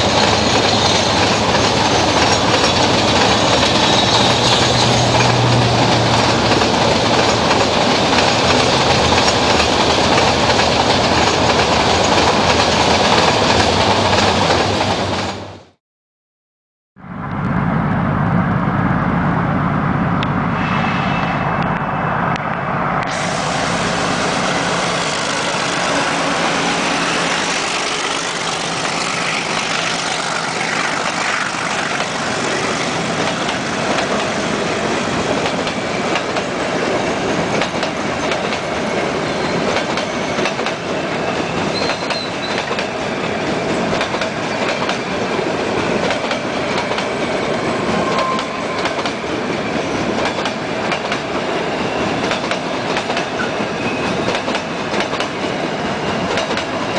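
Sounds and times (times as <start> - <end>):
train rumbling on track: 0.0 - 15.8, 17.0 - 56.9
low hum: 17.0 - 24.1.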